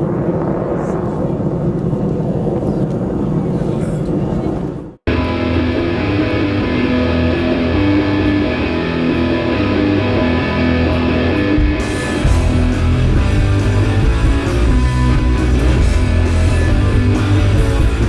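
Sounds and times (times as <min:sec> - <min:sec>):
guitar music: 0:05.1 - 0:18.0.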